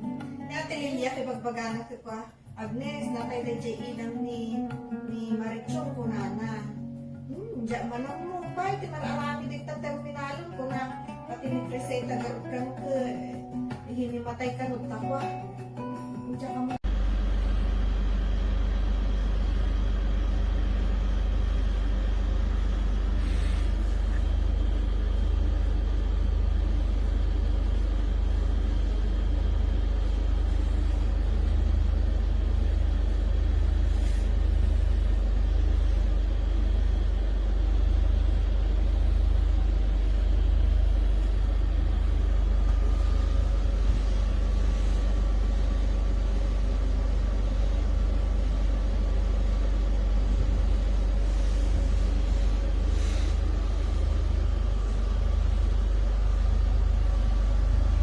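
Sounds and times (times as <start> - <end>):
motor vehicle rumble: 16.8 - 58.0.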